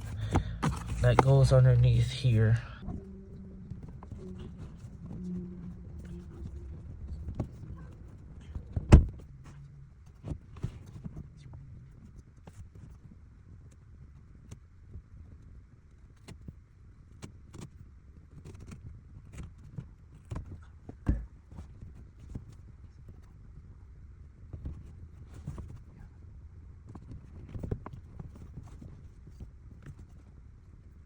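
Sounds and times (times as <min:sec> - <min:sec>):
hands and tool working on carpet: 0:00.0 - 0:02.6.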